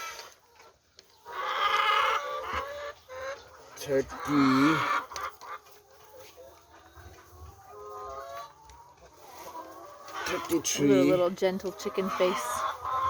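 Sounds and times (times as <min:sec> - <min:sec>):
hens clucking: 0:00.0 - 0:13.0.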